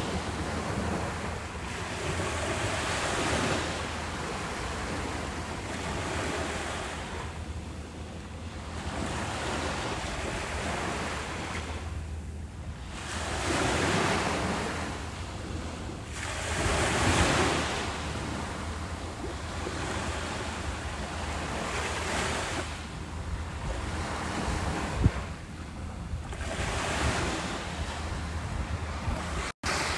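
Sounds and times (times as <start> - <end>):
ocean waves washing in: 0.0 - 29.9
wind on microphone: 21.3 - 29.9.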